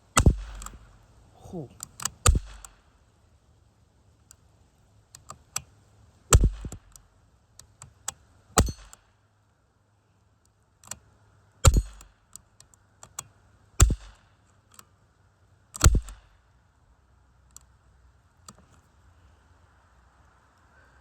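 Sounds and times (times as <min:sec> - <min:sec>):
pistol shot crack: 0:00.2 - 0:00.9, 0:02.2 - 0:02.8, 0:06.3 - 0:06.8, 0:08.6 - 0:09.0, 0:11.7 - 0:12.0, 0:13.8 - 0:14.2, 0:15.8 - 0:16.3.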